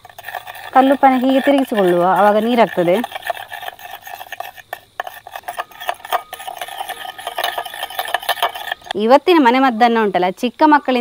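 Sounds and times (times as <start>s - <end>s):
spoon scraping a dish: 0.0s - 9.0s.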